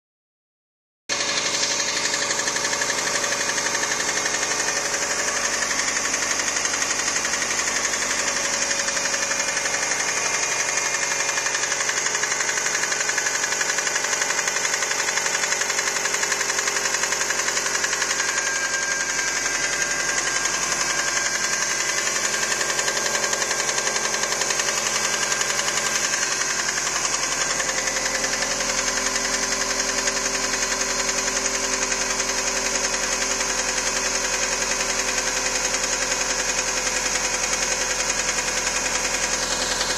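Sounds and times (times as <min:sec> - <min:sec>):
car engine running: 0:01.1 - 0:39.9
engine knocking: 0:01.1 - 0:39.9.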